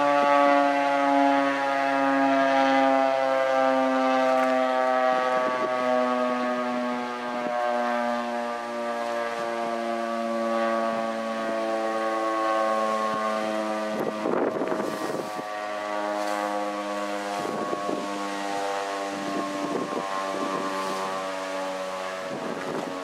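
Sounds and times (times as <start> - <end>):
warning siren steady tone: 0.0 - 23.0
wind rumbling on microphone: 5.2 - 6.1, 13.0 - 23.0.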